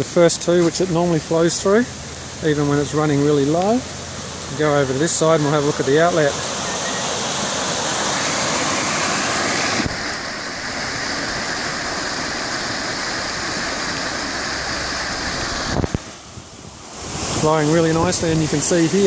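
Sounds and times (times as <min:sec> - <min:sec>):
creek rushing through pipes: 0:00.0 - 0:19.0.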